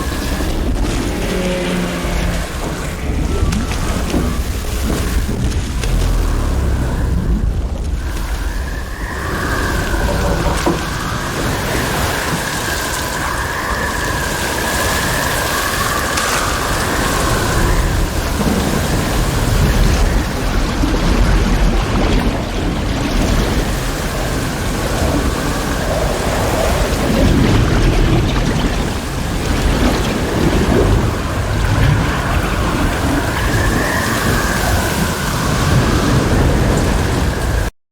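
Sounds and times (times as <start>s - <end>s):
deep steady rumble: 0.0s - 12.3s
water churning and splashing: 0.0s - 37.7s.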